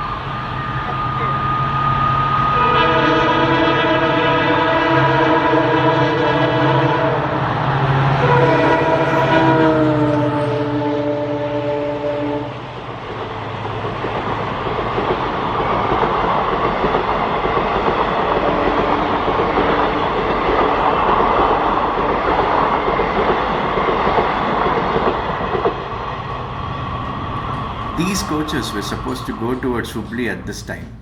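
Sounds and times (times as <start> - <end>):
train wheels rushing on rails: 0.0 - 31.0
train horn chord: 2.5 - 13.0.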